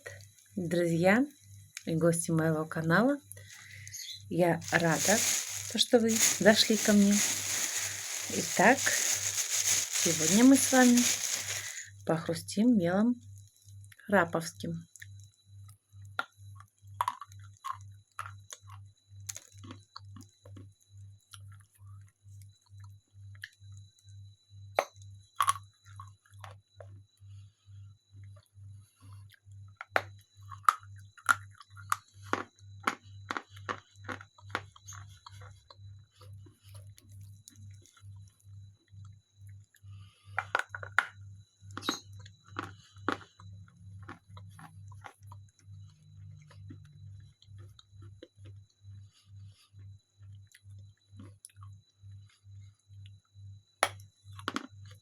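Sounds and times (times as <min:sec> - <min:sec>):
chalk crunching while chewed: 0:16.6 - 0:20.7, 0:30.5 - 0:35.8, 0:41.8 - 0:48.6.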